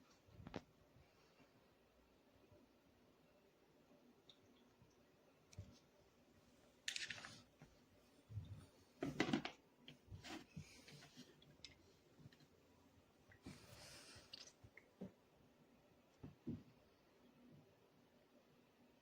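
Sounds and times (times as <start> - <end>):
rustling handling noises: 6.8 - 12.6.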